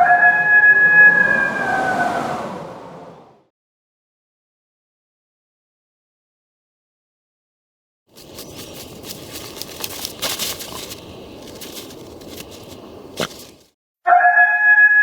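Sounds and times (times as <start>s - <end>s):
rustling and crunching: 8.1s - 13.7s.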